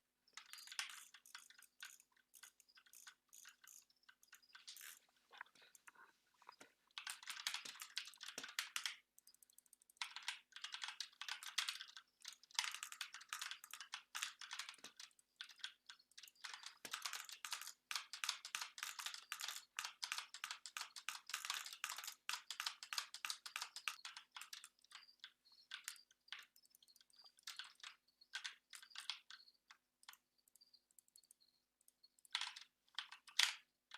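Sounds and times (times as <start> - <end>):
keyboard typing: 0.3 - 33.9.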